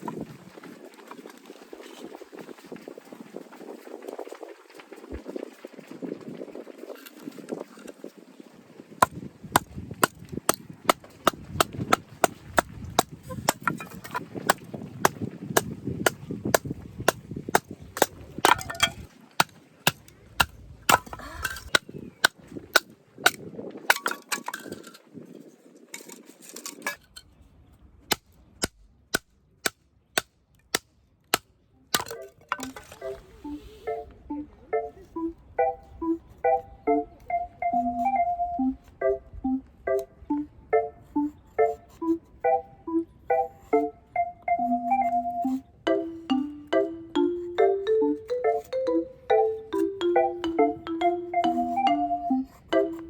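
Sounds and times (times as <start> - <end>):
hammer striking tent pegs: 9.0 - 24.4
faint music: 32.0 - 53.0.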